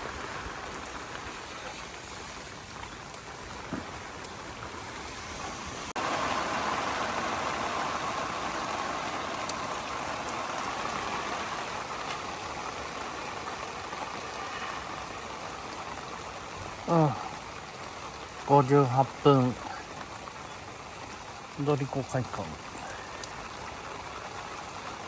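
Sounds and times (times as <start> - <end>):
heavy rain falling: 0.0 - 25.0.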